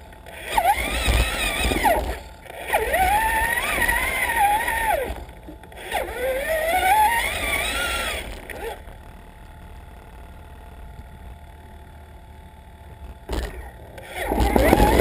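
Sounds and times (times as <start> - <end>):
electric motor whining: 0.0 - 9.1, 13.2 - 15.0.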